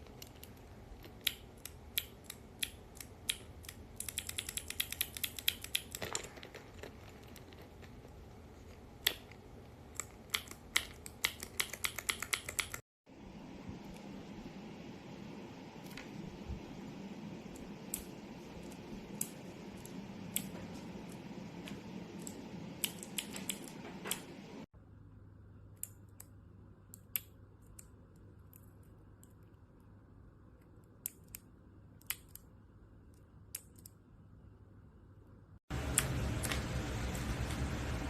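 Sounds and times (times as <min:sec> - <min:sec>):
low steady hum: 0:13.1 - 0:38.0.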